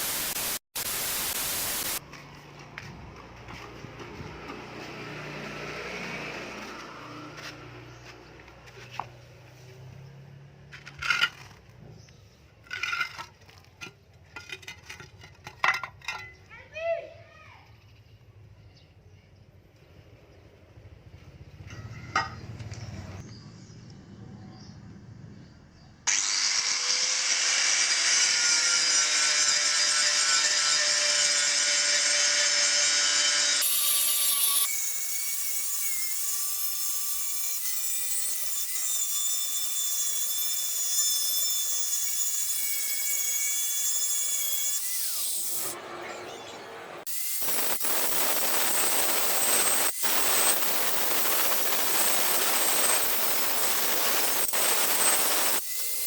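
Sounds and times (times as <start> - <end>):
power tool grinding rust off steel: 26.1 - 45.8, 47.0 - 56.0.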